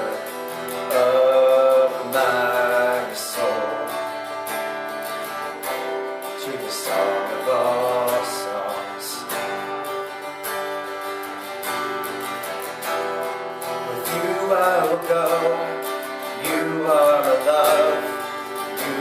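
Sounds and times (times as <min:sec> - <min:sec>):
faint voice singing: 0:00.0 - 0:04.4, 0:05.6 - 0:09.8, 0:13.7 - 0:19.0
acoustic guitar strumming: 0:00.0 - 0:19.0.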